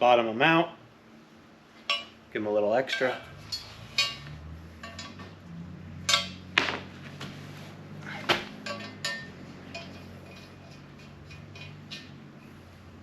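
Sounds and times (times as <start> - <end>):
wrench clinking on metal: 2.9 - 5.3, 6.1 - 6.4, 8.6 - 12.3.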